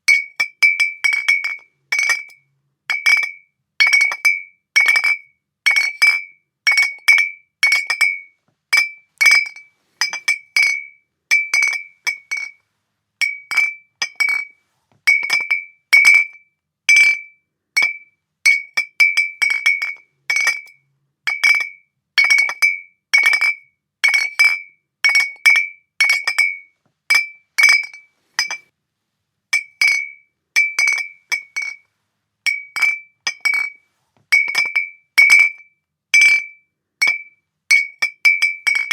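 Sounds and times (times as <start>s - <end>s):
glass bottles clinking: 0.1s - 2.3s, 8.8s - 12.6s, 13.2s - 14.5s, 15.1s - 16.2s, 27.2s - 28.6s, 29.6s - 31.8s, 32.5s - 35.6s, 36.2s - 38.9s.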